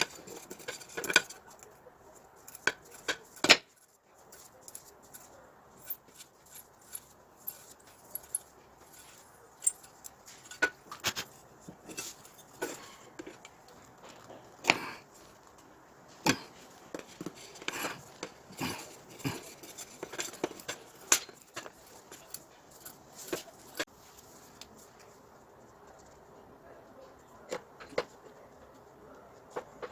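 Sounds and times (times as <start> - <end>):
hard objects knocking and clicking: 0.0 - 1.8, 2.4 - 23.9.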